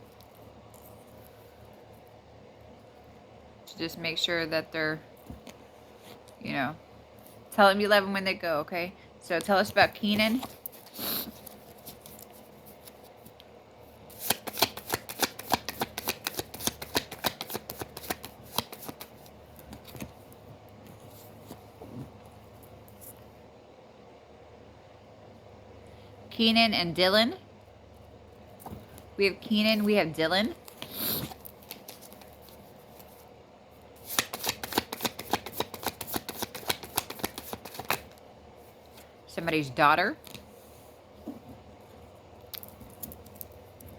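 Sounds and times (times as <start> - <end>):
cards being shuffled: 10.0 - 13.4, 14.1 - 20.4, 30.6 - 33.2, 34.0 - 38.2.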